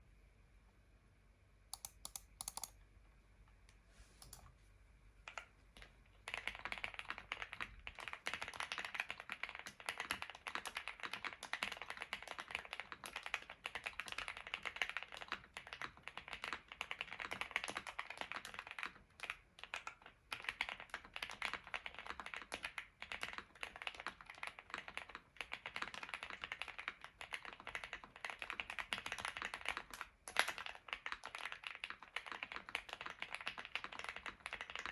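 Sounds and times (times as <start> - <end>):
mechanical keyboard typing: 1.8 - 2.8, 4.2 - 4.5, 20.4 - 34.9.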